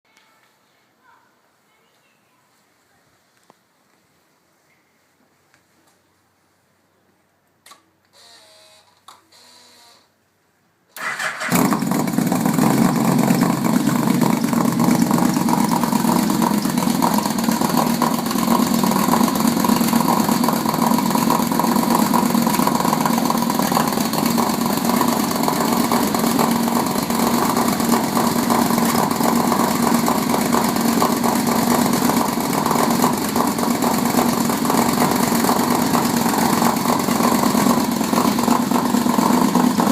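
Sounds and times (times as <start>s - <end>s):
motorcycle engine cranking: 11.0s - 18.8s
motorcycle engine idling: 11.4s - 39.9s.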